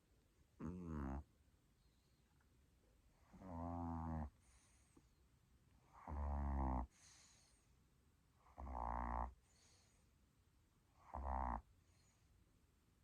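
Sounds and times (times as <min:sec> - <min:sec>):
rasping snores: 0:00.6 - 0:01.2, 0:03.2 - 0:04.8, 0:05.9 - 0:07.4, 0:08.4 - 0:09.7, 0:11.0 - 0:11.6
faint breath out: 0:06.9 - 0:07.8, 0:09.4 - 0:10.2.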